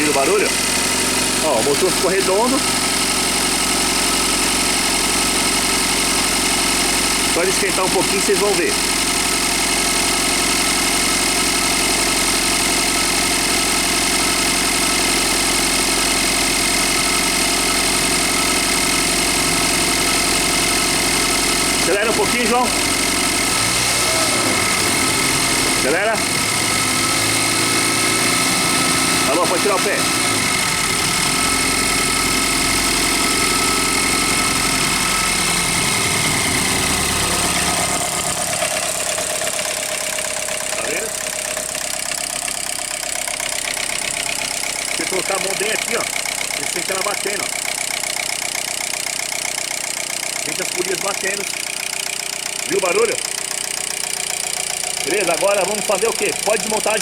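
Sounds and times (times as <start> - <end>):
car engine idling: 0.0 - 57.0
rapid knocking rattle: 29.0 - 57.0.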